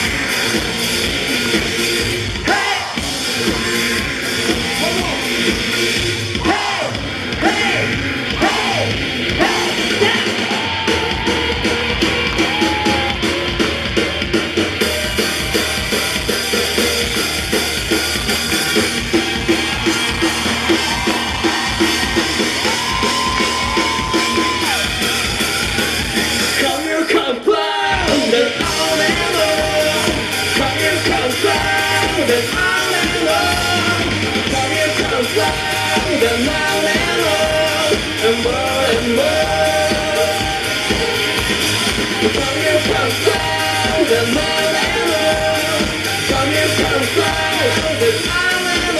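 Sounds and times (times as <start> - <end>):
live rock band playing: 0.0 - 48.9.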